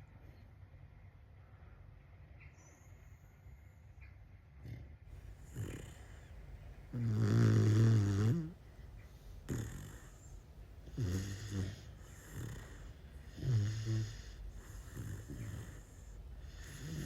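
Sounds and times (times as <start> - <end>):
puppy snoring: 4.5 - 17.0.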